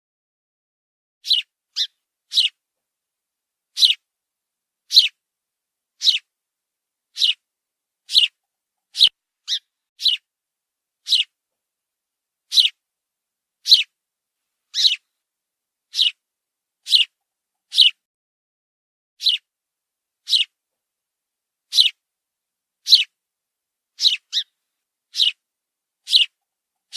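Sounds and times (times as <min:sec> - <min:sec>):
sparrow chirping: 0:01.2 - 0:02.6, 0:03.7 - 0:04.1, 0:04.9 - 0:05.2, 0:06.0 - 0:06.3, 0:07.1 - 0:07.4, 0:08.0 - 0:10.3, 0:11.0 - 0:11.4, 0:12.5 - 0:12.8, 0:13.6 - 0:14.0, 0:14.7 - 0:15.1, 0:15.9 - 0:16.2, 0:16.8 - 0:18.0, 0:19.2 - 0:19.5, 0:20.2 - 0:20.6, 0:21.6 - 0:22.0, 0:22.8 - 0:23.2, 0:24.0 - 0:25.4, 0:26.0 - 0:26.9.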